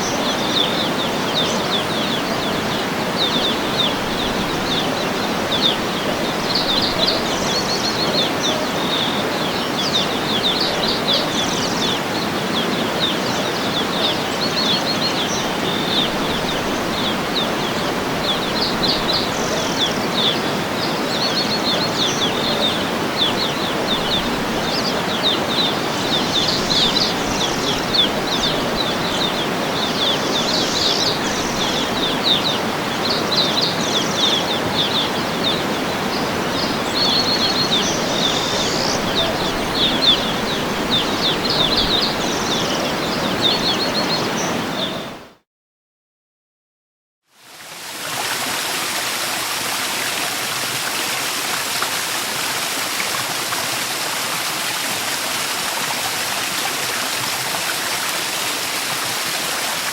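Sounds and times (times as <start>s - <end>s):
small birds chirping: 0.0s - 45.1s
waterfall rushing: 0.0s - 45.1s, 47.5s - 59.9s.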